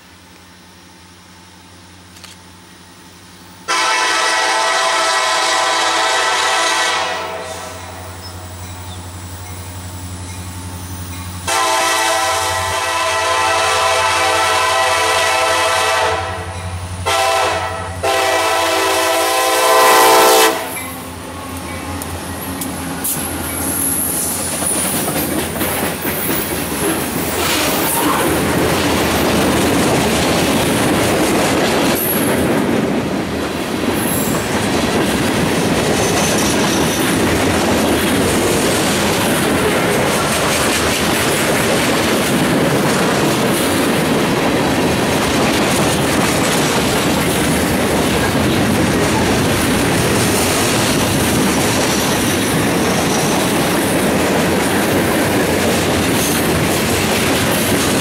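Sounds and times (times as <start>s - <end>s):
freight train rumbling past: 0.0s - 58.0s
locomotive horn blasts: 3.7s - 8.1s, 11.5s - 21.0s
wheels clattering over rail joints: 20.7s - 58.0s.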